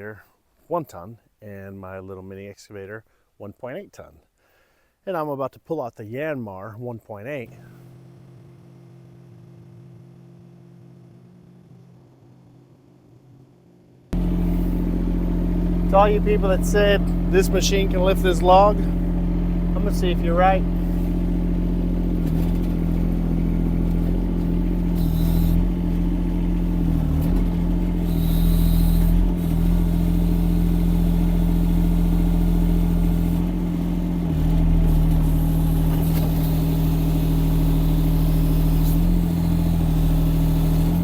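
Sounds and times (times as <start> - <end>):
excavator engine running: 7.4 - 41.0
hydraulics working: 14.2 - 41.0.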